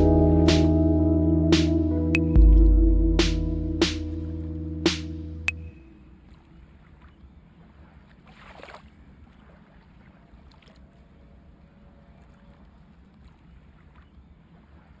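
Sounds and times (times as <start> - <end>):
steady low rumble: 0.0 - 5.7
water splashing: 2.4 - 11.3
faint water washing: 5.4 - 15.0.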